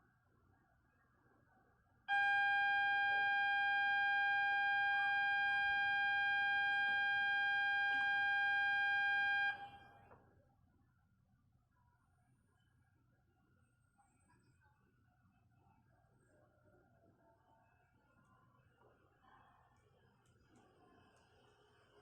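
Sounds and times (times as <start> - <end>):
steady high buzzer tone: 2.1 - 9.7.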